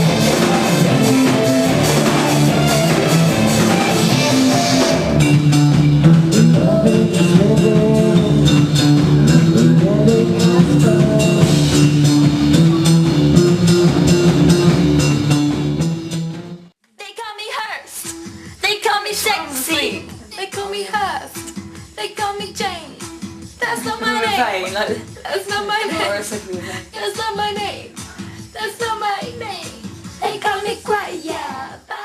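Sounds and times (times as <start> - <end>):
drum kit beat: 0.0 - 16.7, 18.0 - 31.9
rock guitar chords: 0.0 - 16.7.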